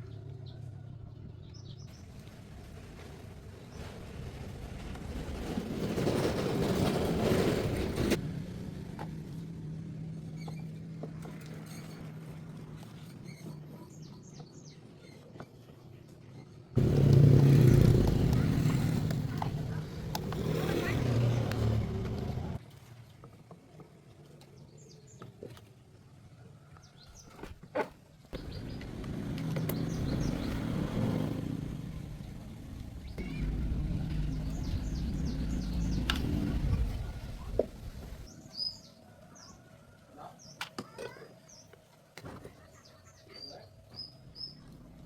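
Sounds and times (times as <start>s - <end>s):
birds chirping: 12.9s - 22.6s, 28.3s - 41.9s
small engine running: 16.8s - 22.6s, 28.4s - 38.3s.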